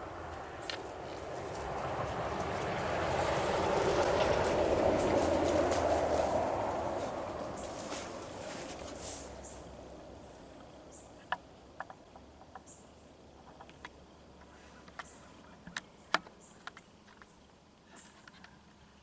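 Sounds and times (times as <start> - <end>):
high insect chirps: 9.3 - 18.4.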